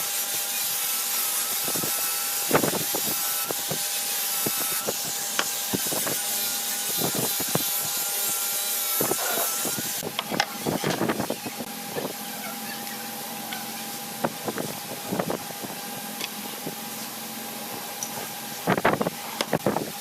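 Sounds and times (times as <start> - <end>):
rubbing and scraping on wood: 4.4 - 10.0.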